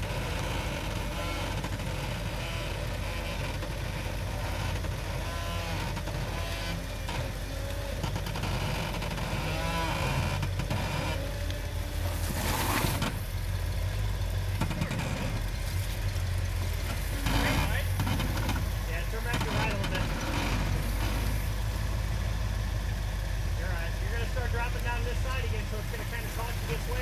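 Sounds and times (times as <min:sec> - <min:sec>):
short creaks: 0:00.0 - 0:13.5, 0:14.2 - 0:21.9
off-road vehicle engine running: 0:00.0 - 0:27.0
loud scraping rush: 0:09.0 - 0:13.5, 0:14.5 - 0:21.9.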